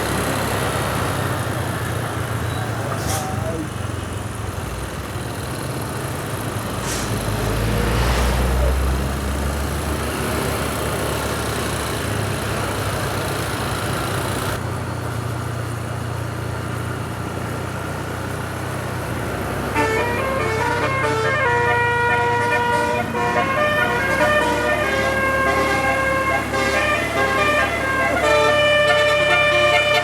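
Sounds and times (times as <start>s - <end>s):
large vehicle passing rumble: 0.0s - 15.2s, 18.4s - 30.0s
road traffic noise: 0.0s - 30.0s
musical vehicle horn tune: 19.6s - 30.0s.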